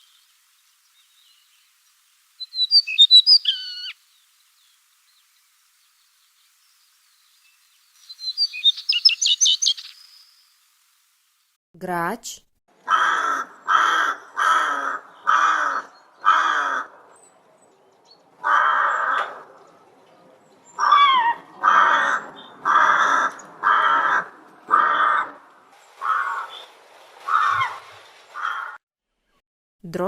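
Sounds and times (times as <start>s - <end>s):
rook cawing: 12.8s - 17.0s, 18.4s - 19.5s, 20.8s - 27.8s, 28.4s - 28.8s.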